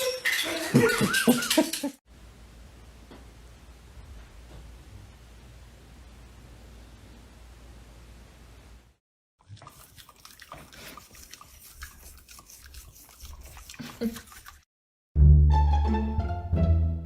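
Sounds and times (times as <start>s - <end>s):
dog chewing: 9.5s - 14.6s
plucked-string music: 15.2s - 17.0s.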